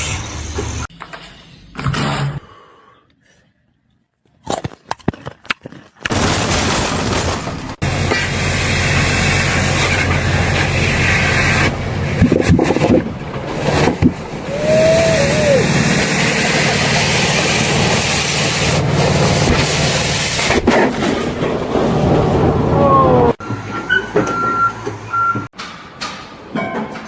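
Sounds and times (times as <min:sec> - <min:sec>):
engine humming: 0:07.8 - 0:23.4
rising and falling tone: 0:14.3 - 0:19.2.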